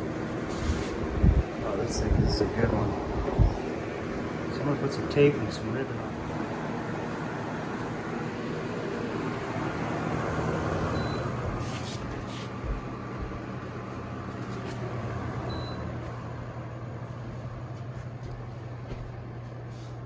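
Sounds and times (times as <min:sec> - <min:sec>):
fan running: 0:00.0 - 0:20.0.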